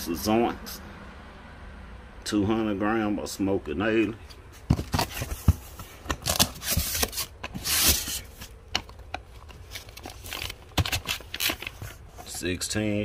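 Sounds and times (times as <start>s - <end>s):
cardboard boxes scraping and rustling: 4.5s - 8.7s, 9.4s - 12.4s.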